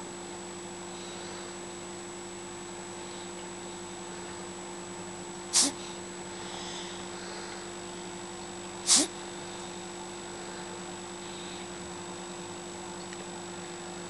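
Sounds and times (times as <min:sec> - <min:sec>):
steady hum: 0:00.0 - 0:14.0
person gasping for air: 0:05.6 - 0:07.7, 0:08.8 - 0:09.2.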